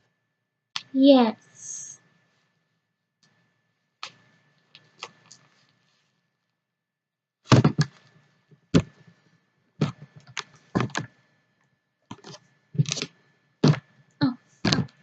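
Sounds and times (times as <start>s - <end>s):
irregular knocks and thumps: 7.5s - 9.1s, 9.8s - 11.1s, 12.1s - 13.9s, 14.6s - 15.0s.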